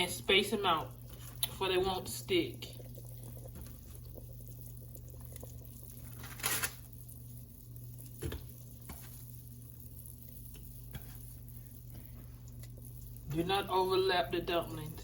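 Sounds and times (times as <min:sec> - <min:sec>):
steady low hum: 0:00.0 - 0:15.0
soft wet handling sounds: 0:00.9 - 0:01.7.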